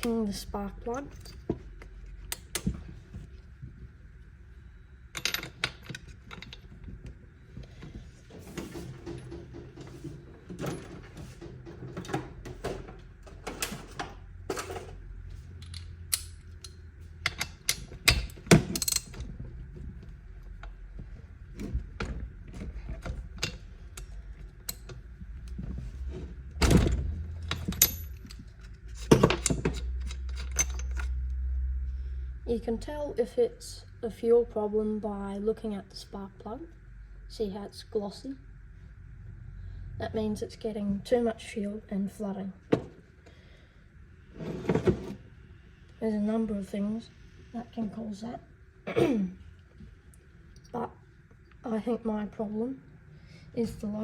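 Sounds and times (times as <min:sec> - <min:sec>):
tools clicking and clunking: 0:05.2 - 0:19.3, 0:21.5 - 0:25.1, 0:26.6 - 0:31.2.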